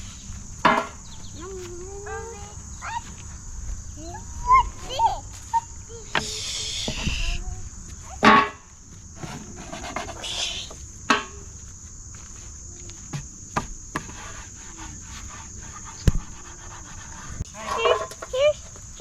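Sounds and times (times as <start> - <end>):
high-pitched insect chorus: 0.0 - 19.0.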